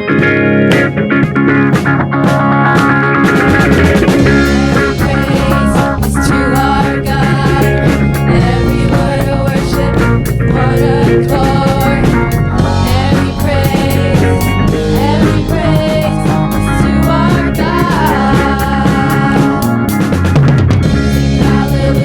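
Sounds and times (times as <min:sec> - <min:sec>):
rock band music: 0:00.0 - 0:22.0
sliding lead melody: 0:00.0 - 0:22.0.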